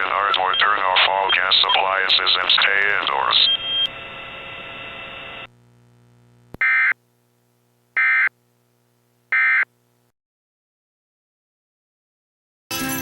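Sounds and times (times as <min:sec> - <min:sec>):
emergency alert data tones: 0:00.2 - 0:05.5.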